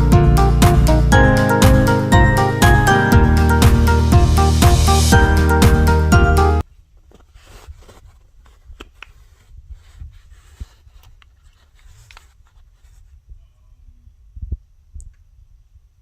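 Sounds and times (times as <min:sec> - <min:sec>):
background music: 0:00.0 - 0:06.6
rustling of packaging: 0:06.7 - 0:13.2.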